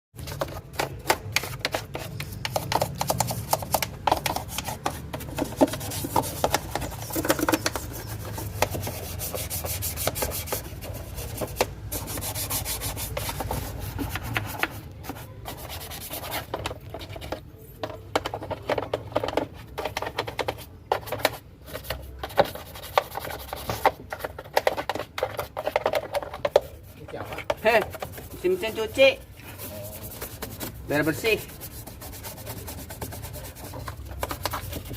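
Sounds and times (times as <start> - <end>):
scrubbing and scraping strokes: 1.2 - 16.3, 25.5 - 34.9.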